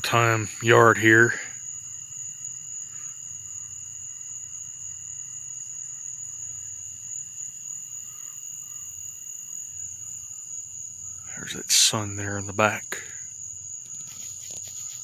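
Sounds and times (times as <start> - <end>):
faint low hum: 0.0 - 1.6
insects trilling: 0.0 - 15.0.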